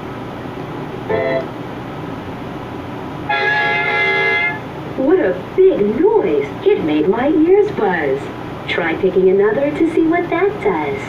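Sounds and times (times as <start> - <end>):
held tone with overtones: 1.1 - 1.6.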